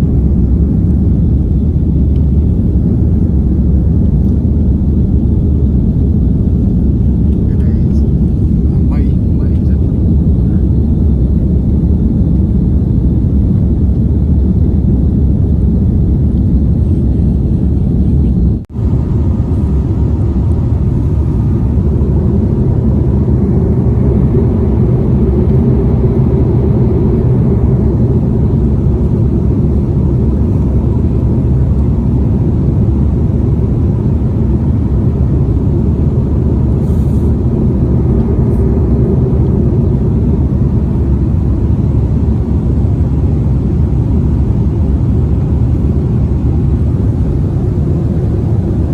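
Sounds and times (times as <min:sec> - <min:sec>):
airliner engines and airflow rumbling: 0:00.0 - 0:48.9.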